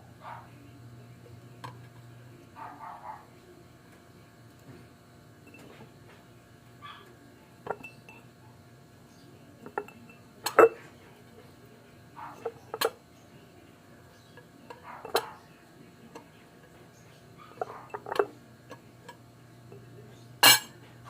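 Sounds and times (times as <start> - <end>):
dishes and utensils clinking: 7.6 - 8.2, 9.6 - 10.8, 14.3 - 15.4, 17.5 - 20.9.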